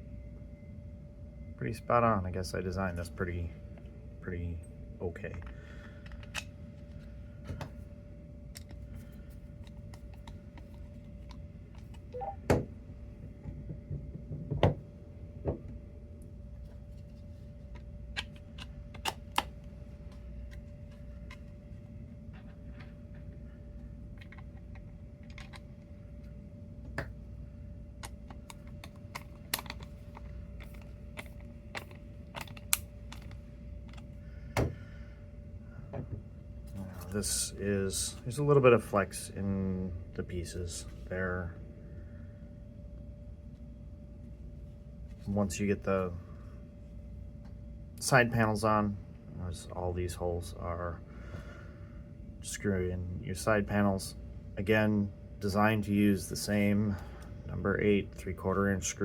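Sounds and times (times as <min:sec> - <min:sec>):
steady low hum: 0:00.0 - 0:59.0
plastic parts clicking and knocking: 0:24.2 - 0:25.6, 0:28.0 - 0:34.0.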